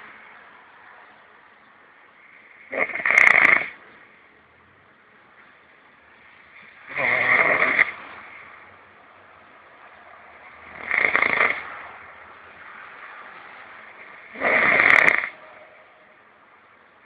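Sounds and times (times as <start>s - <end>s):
person snoring: 6.9s - 8.0s, 14.3s - 15.3s.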